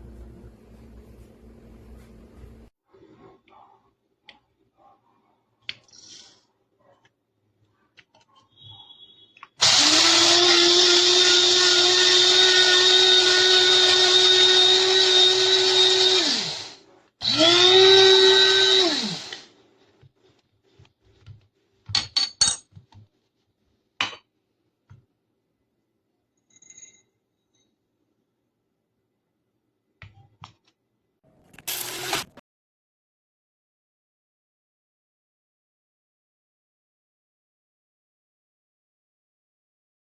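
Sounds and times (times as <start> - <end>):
coffee grinder motor whine: 9.6 - 19.5, 31.4 - 32.4.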